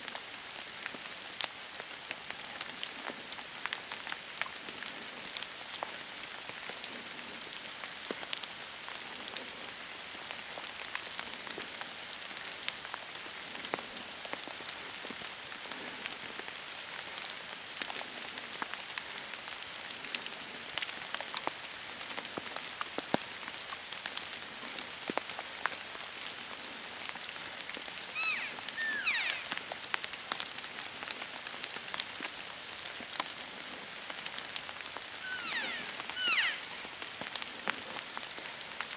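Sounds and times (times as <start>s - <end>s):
rain pattering: 0.0s - 38.9s
small bird chirping: 28.2s - 29.6s, 35.2s - 37.0s.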